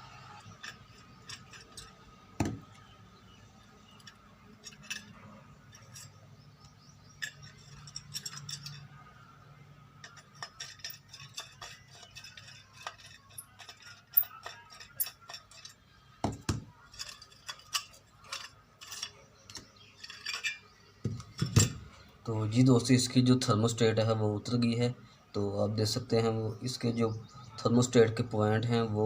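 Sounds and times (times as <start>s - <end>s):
metal parts and tools clinking: 0.1s - 3.0s, 3.6s - 22.1s.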